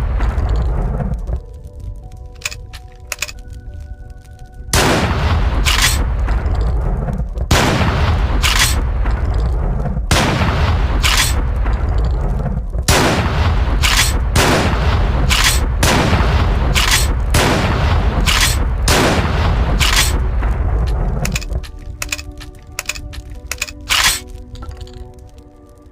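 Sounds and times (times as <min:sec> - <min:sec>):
low rumble: 0:00.0 - 0:25.4
quiet music: 0:00.0 - 0:25.9
light clicks: 0:00.2 - 0:03.8, 0:20.8 - 0:25.8
shotgun blasts: 0:04.8 - 0:06.1, 0:07.5 - 0:08.9, 0:10.1 - 0:11.5, 0:12.9 - 0:23.0.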